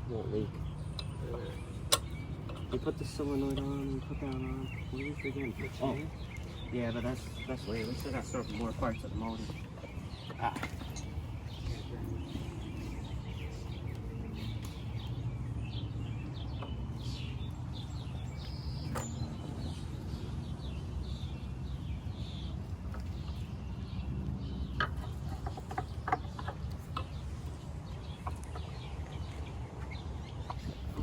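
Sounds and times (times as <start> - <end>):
small birds chirping: 0.0 - 31.0.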